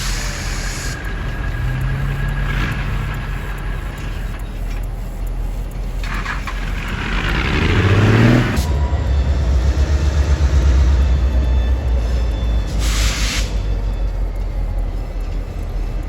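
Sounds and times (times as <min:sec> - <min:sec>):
air hiss: 0:00.0 - 0:07.1, 0:12.1 - 0:13.7
diesel locomotive engine rumbling: 0:00.0 - 0:16.0.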